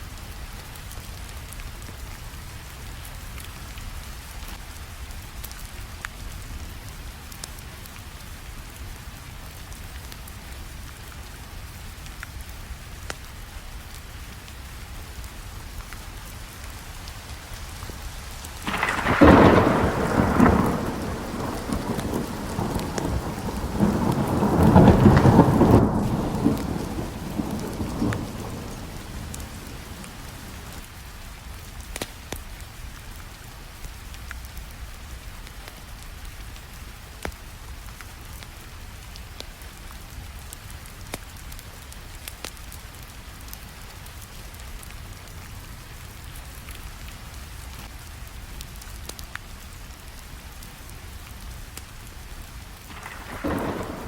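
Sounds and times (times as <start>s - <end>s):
steady rainfall: 0.0s - 54.0s
thunder rumbling: 18.6s - 30.8s, 52.9s - 54.0s.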